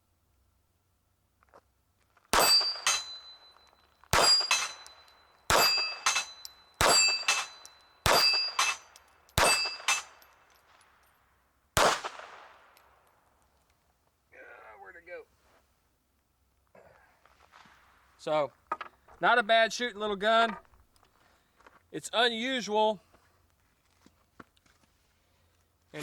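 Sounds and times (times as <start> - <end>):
pistol shots: 2.3 - 3.2, 4.1 - 4.9, 5.5 - 10.3, 11.8 - 12.8
steel plate target ringing: 2.4 - 10.3.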